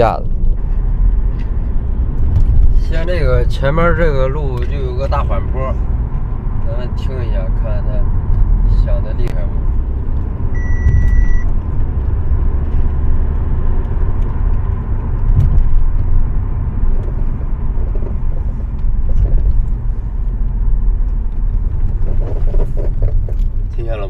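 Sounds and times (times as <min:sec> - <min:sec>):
car road rumble: 0:00.0 - 0:24.0
suspension squeaking and creaking: 0:09.8 - 0:24.0.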